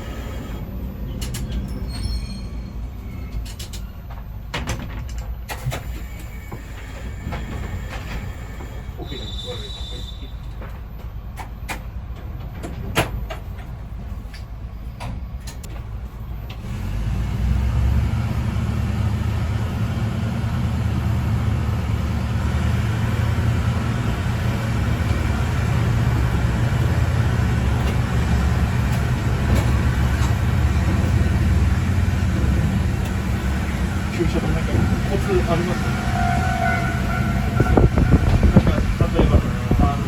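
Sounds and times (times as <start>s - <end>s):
diesel engine droning: 0.0s - 1.8s, 15.4s - 40.0s.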